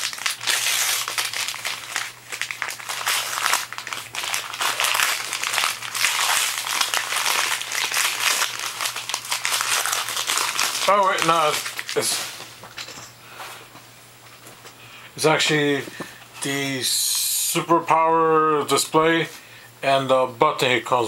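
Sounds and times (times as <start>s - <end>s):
plastic packaging crinkling: 0.0s - 13.2s.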